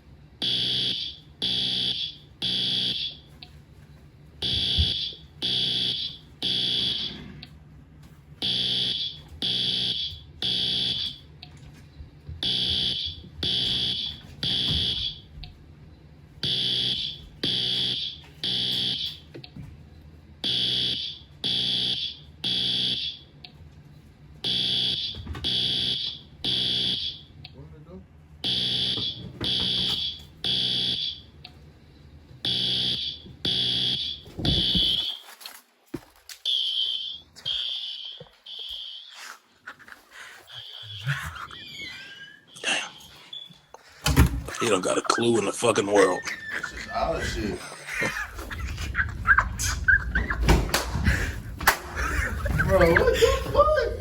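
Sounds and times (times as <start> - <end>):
smoke alarm high-pitched beeps: 0.4 - 3.6, 4.4 - 7.4, 8.4 - 11.3, 12.4 - 15.6, 16.4 - 19.3, 20.4 - 23.3, 24.4 - 27.3, 28.4 - 31.3, 32.4 - 35.2, 36.5 - 39.3, 40.5 - 41.6.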